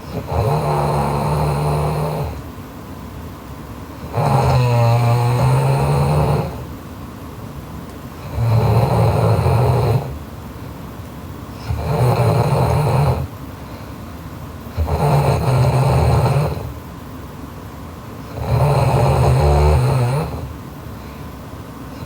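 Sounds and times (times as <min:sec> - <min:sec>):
woman snoring loudly: 0:00.0 - 0:02.4, 0:04.0 - 0:06.7, 0:08.2 - 0:10.2, 0:11.6 - 0:13.3, 0:14.8 - 0:16.7, 0:18.3 - 0:20.5.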